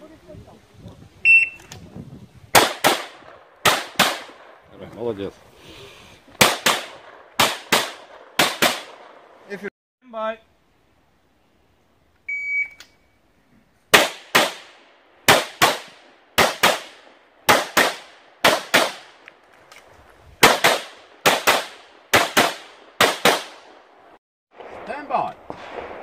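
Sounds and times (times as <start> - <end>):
shot timer beep: 1.3 - 1.7, 12.3 - 13.0
handgun shots: 2.6 - 4.4, 6.4 - 9.0, 20.4 - 23.6.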